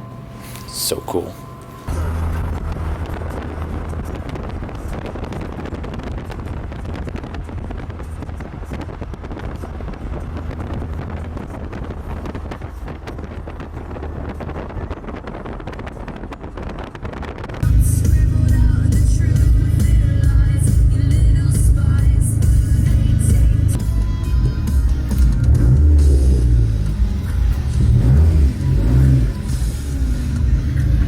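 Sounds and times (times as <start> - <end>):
car road noise: 0.0 - 31.0
wind buffeting microphone: 1.9 - 24.0.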